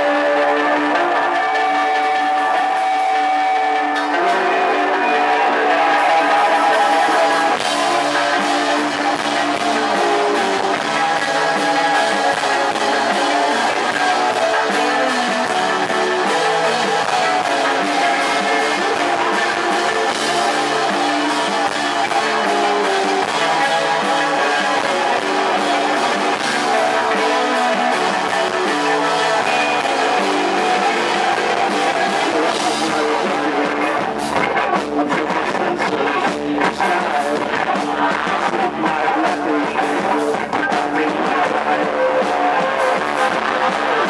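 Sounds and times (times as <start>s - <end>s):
electric guitar: 0.0s - 44.0s
live rock band playing: 0.0s - 44.0s.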